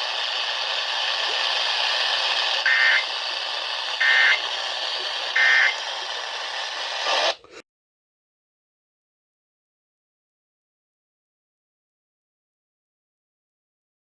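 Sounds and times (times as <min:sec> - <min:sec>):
radio hiss: 0:00.0 - 0:07.6
raspy two-tone digital bursts: 0:02.6 - 0:03.2, 0:04.0 - 0:06.3.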